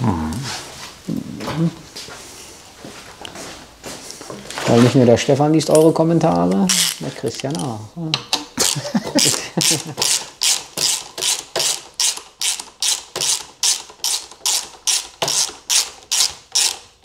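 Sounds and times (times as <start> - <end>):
ratchet wrench rasping: 6.7 - 7.8, 8.6 - 17.0.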